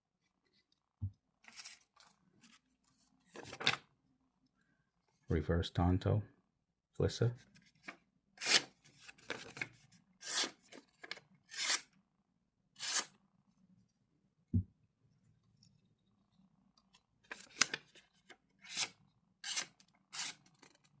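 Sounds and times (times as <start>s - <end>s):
pocket knife rubbing and scraping: 11.5s - 11.9s, 12.8s - 13.1s, 18.6s - 20.8s.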